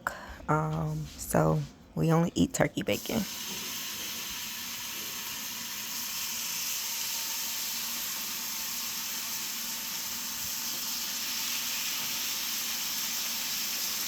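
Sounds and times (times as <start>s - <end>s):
bacon sizzling in frying pan: 3.2s - 14.0s.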